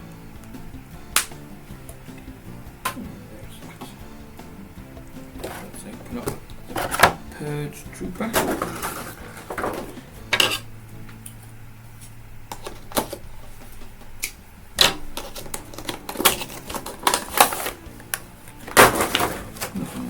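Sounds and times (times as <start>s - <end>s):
packaging clicks: 14.2s - 19.8s
packaging rustling: 15.1s - 19.8s.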